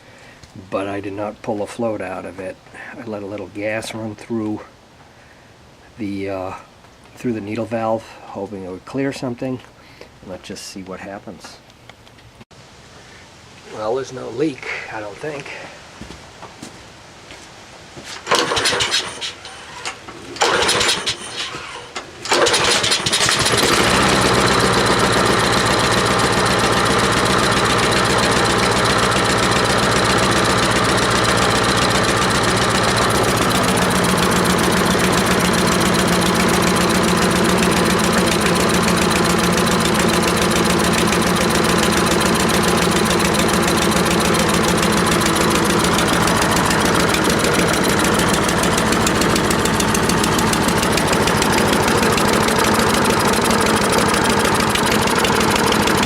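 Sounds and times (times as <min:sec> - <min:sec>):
lawn mower engine sputtering and running: 0:18.2 - 0:56.0.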